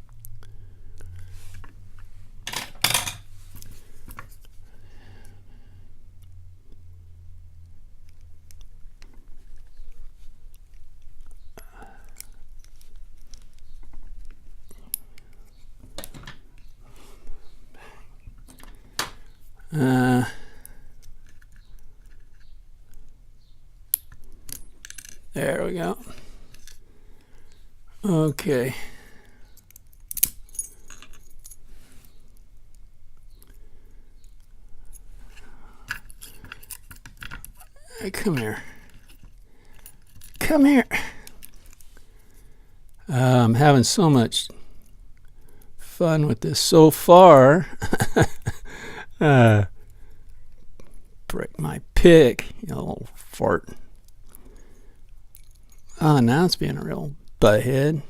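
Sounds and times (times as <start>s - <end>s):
metal tools clicking on padlock: 23.4s - 25.3s, 29.5s - 31.6s, 35.9s - 37.7s, 38.9s - 40.4s, 55.0s - 55.9s.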